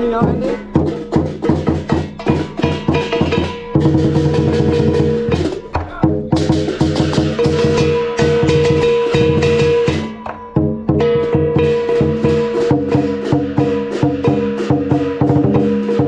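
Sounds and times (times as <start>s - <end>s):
lion drum beating: 0.0s - 16.0s
gong: 6.6s - 16.0s.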